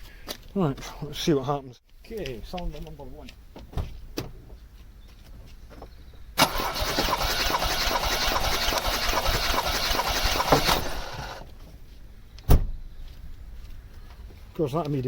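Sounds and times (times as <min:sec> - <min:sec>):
engine cranking on starter motor: 0:06.4 - 0:11.5.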